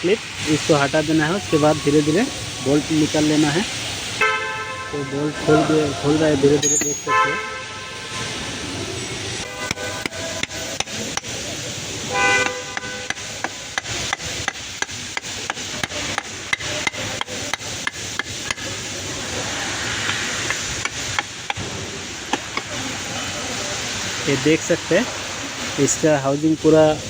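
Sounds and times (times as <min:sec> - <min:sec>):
car horn: 0:04.2 - 0:08.4, 0:09.4 - 0:10.5, 0:12.0 - 0:13.3.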